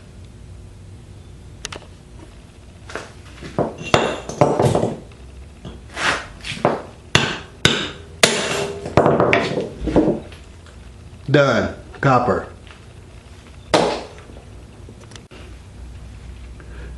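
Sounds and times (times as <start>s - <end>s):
hammer striking steel casing: 3.6s - 5.1s, 6.7s - 9.8s.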